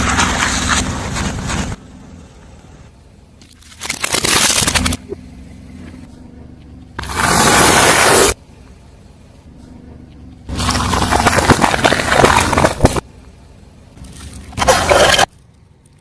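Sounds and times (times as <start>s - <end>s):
objects crunching under car tyre: 0.0s - 1.8s, 3.4s - 5.0s, 7.0s - 8.4s, 10.5s - 13.2s, 14.0s - 16.0s
low car rumble: 0.0s - 16.0s.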